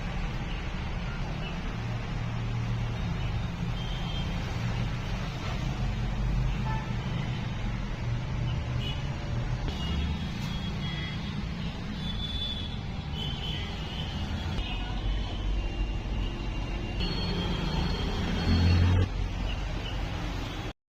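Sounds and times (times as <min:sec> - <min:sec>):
road traffic rumble: 0:00.0 - 0:20.8.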